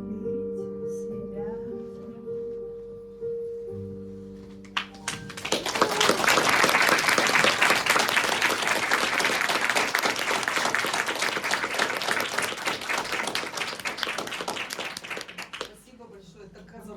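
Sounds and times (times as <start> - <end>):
audience applauding: 4.8 - 15.8.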